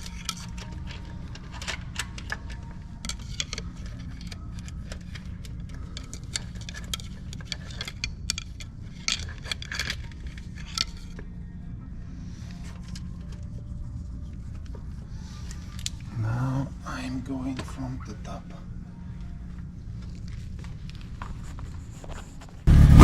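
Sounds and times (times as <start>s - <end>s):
metallic chain clicks and rattles: 0.0s - 11.2s
steady low hum: 0.0s - 23.0s.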